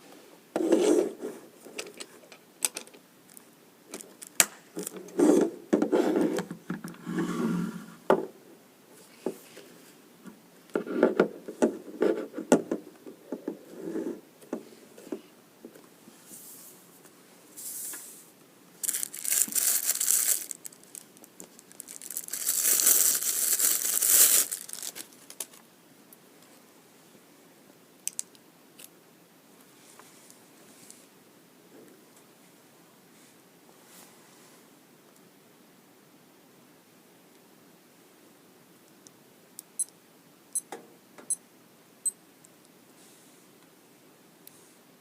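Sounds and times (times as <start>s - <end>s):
packaging rustling and knocking: 18.8s - 20.8s, 21.7s - 25.5s
packaging crinkling or tearing: 18.8s - 25.6s.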